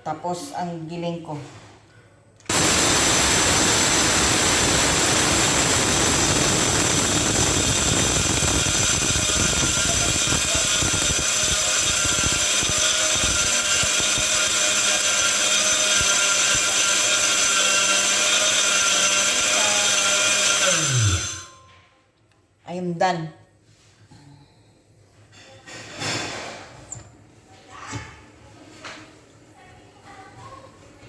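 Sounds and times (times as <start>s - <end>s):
electric coffee grinder running: 2.5s - 21.6s.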